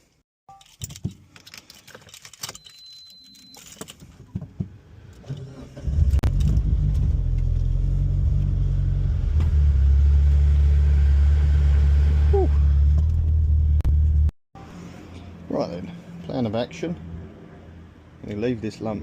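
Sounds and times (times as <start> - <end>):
keys jangling: 0.5 - 4.1
car engine starting and idling: 5.0 - 14.3.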